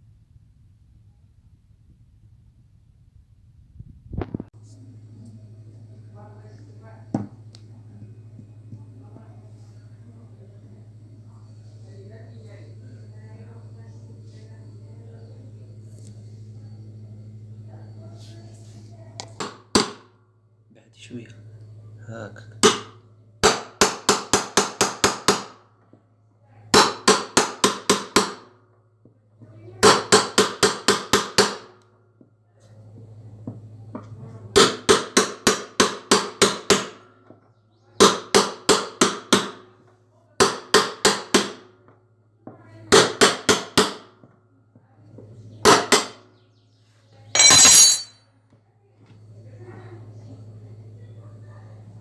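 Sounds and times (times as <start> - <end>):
steady low hum: 0.0 - 19.2.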